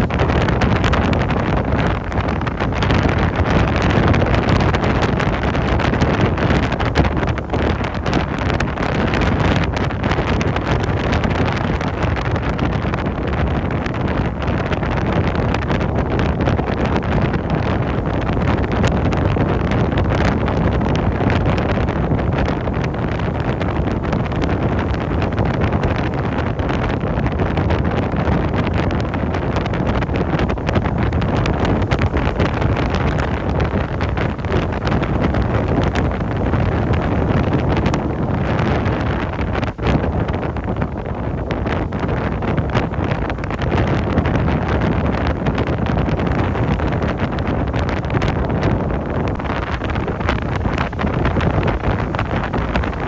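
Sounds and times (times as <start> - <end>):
wind buffeting microphone: 0.0 - 53.0
ocean surf breaking: 48.9 - 53.0.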